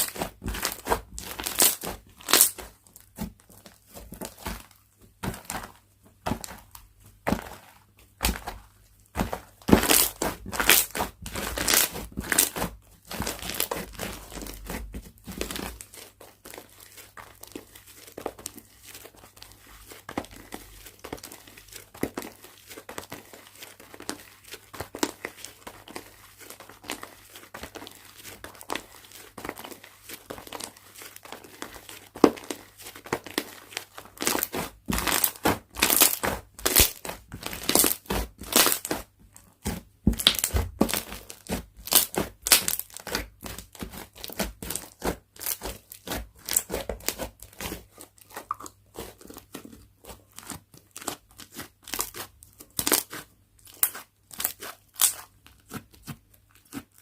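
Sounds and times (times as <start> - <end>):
slime crackling and popping: 0.0 - 2.7, 9.2 - 15.7, 34.1 - 56.0.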